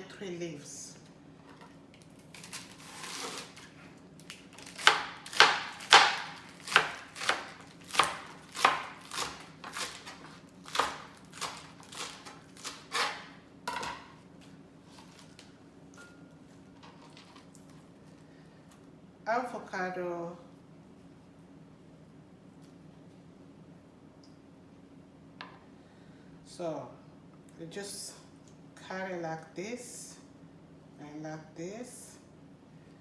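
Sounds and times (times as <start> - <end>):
knife chopping lettuce: 2.2 - 14.1.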